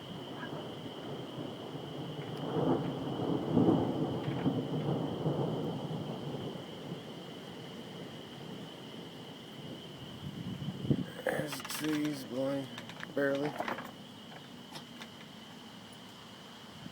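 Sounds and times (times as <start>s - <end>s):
rolling thunder: 0.0s - 13.3s.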